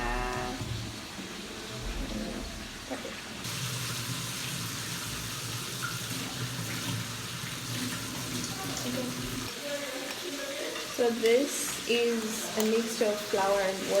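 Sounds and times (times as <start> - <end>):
tap water running into sink: 0.0 - 9.5.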